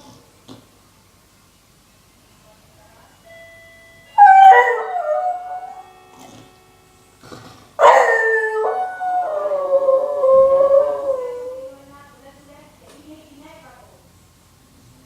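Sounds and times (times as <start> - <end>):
dog howling raspily: 7.8 - 11.8.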